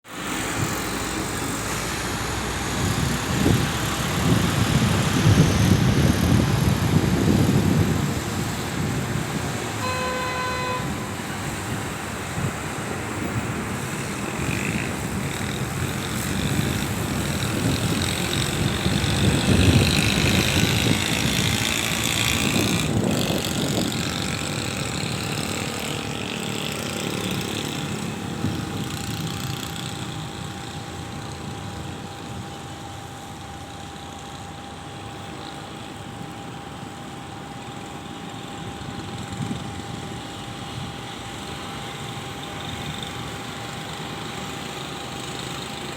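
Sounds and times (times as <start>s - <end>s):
road traffic passing: 0.0s - 45.9s
vehicle horn: 9.8s - 11.6s.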